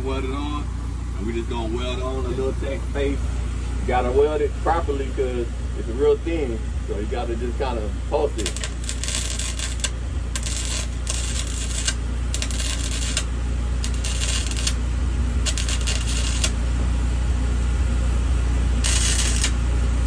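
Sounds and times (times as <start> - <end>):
steady low hum: 0.0 - 20.0
arc welding crackle: 8.2 - 17.1, 18.7 - 20.0.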